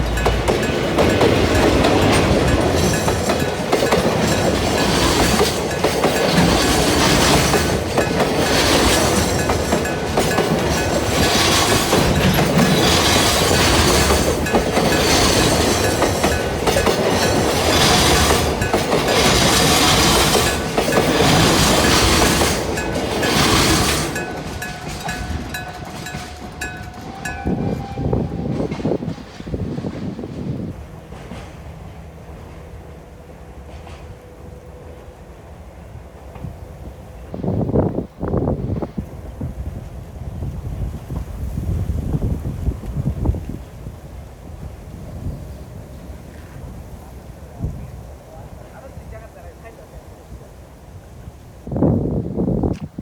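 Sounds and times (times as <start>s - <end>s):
crossing gong bell ringing: 0.0s - 4.9s, 20.4s - 28.3s
train wheels clacking: 0.0s - 32.7s.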